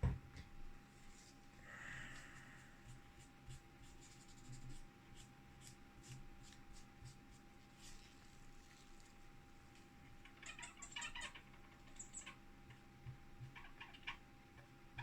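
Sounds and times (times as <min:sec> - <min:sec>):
paper rubbing and scratching: 0:03.2 - 0:09.2.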